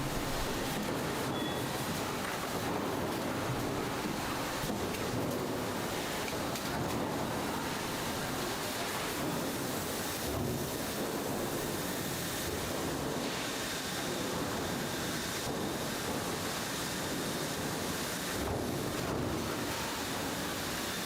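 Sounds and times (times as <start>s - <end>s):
steady rushing noise: 0.0s - 1.0s.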